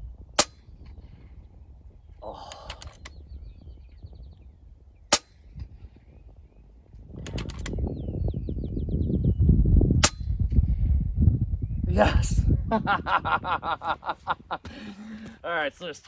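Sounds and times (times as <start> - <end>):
wind buffeting microphone: 0.0 - 16.0
air rifle shot crack: 0.4 - 1.2, 2.5 - 3.2, 5.0 - 6.0, 10.0 - 10.6
rifle action clicking: 2.5 - 3.2, 7.2 - 7.8.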